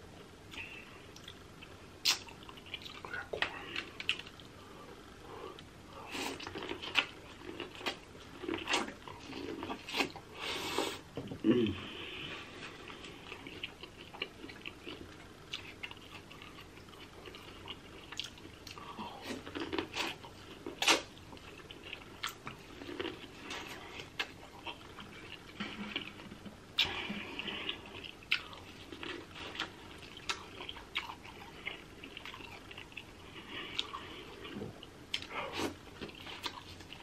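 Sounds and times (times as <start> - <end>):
chewing and mouth smacking: 0.5 - 4.5, 12.8 - 37.0.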